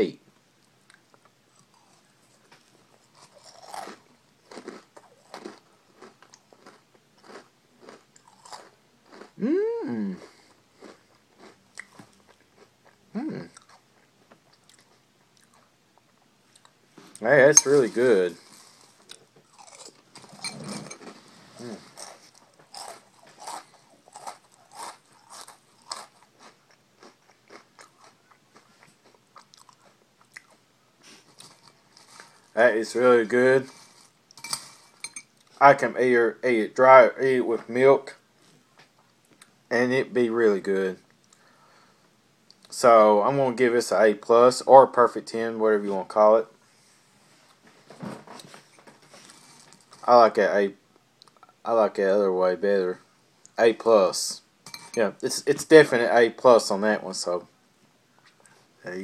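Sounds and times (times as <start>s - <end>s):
chewing crunchy cereal: 0.9s - 9.4s, 10.1s - 32.6s.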